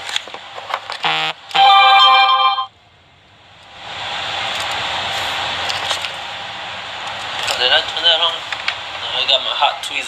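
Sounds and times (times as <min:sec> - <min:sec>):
electronic beeps: 0:01.1 - 0:02.7.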